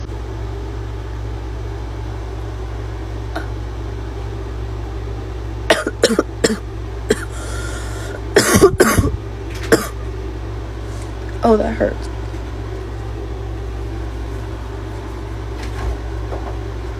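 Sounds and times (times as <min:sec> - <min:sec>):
steady low hum: 0:00.0 - 0:16.9
girl's barking cough: 0:05.7 - 0:07.4, 0:08.4 - 0:10.0.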